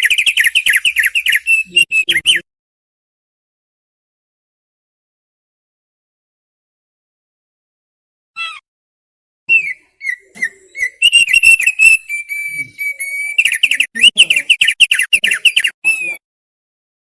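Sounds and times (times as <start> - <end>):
bird whistling song: 0.0 - 2.4, 9.5 - 16.2
fast down-slurred whistles: 0.0 - 2.4, 9.5 - 16.2.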